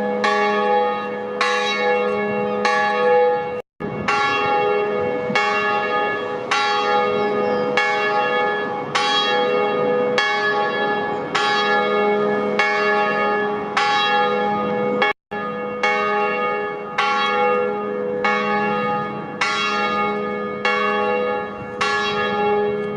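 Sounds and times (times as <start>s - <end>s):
church bells ringing: 0.0s - 22.9s.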